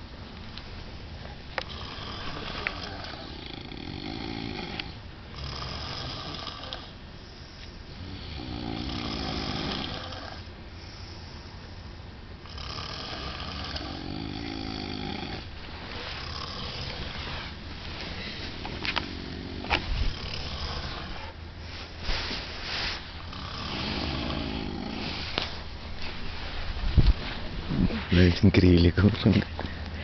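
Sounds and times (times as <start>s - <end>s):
man snoring loudly: 1.6s - 7.0s, 8.0s - 10.5s, 12.4s - 15.5s, 16.1s - 17.5s, 19.1s - 21.2s, 23.2s - 25.2s.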